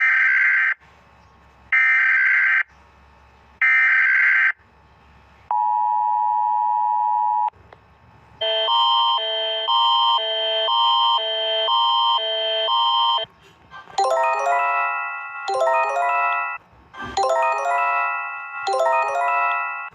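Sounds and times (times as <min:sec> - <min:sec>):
electronic alarm beeps: 0:08.4 - 0:13.3, 0:14.0 - 0:16.6
steady alarm tone: 0:08.4 - 0:19.9
alternating chime: 0:14.0 - 0:19.9.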